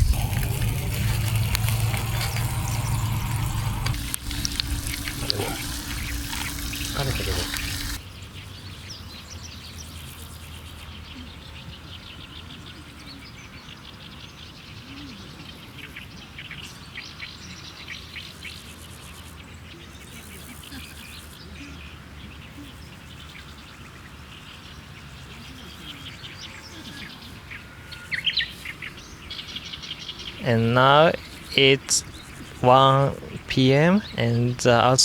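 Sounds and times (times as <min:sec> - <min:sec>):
birds chirping: 0:00.0 - 0:08.0, 0:28.2 - 0:35.0
low background noise: 0:28.7 - 0:35.0.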